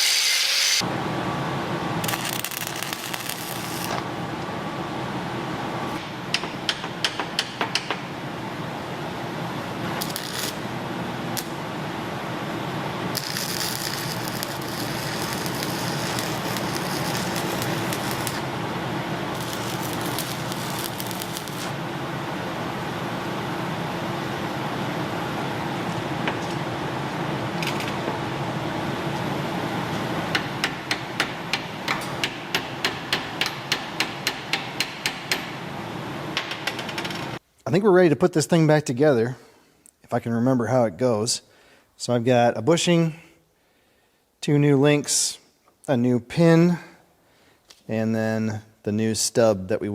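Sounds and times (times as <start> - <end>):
workshop hum: 0.0 - 37.8.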